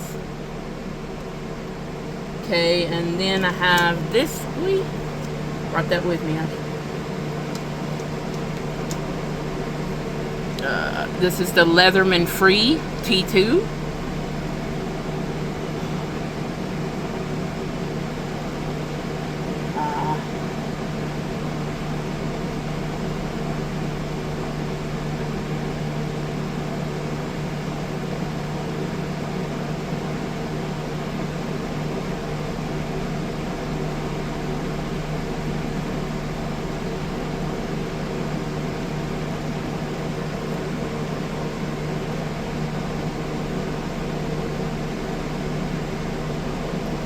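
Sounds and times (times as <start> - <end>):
steady mechanical hum: 0.0 - 47.0.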